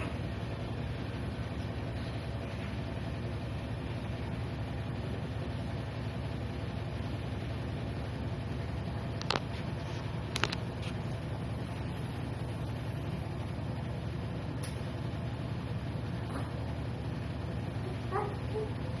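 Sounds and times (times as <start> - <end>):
low machine hum: 0.0 - 19.0.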